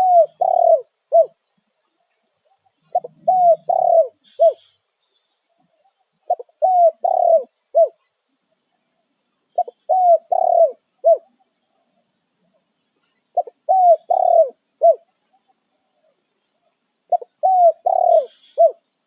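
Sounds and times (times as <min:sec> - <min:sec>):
dove cooing: 0:00.0 - 0:01.4, 0:02.9 - 0:04.7, 0:06.2 - 0:08.0, 0:09.6 - 0:11.3, 0:13.4 - 0:15.1, 0:17.1 - 0:18.8.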